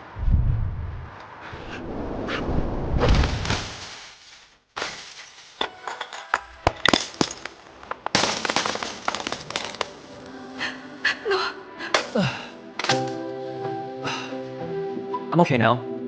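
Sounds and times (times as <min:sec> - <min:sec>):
loud rumbling crash: 0:00.2 - 0:03.9.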